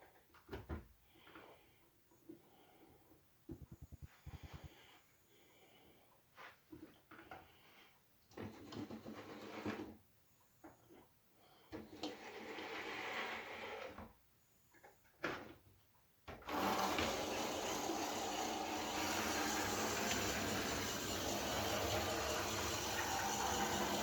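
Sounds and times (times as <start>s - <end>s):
model train motor humming: 16.5s - 24.0s.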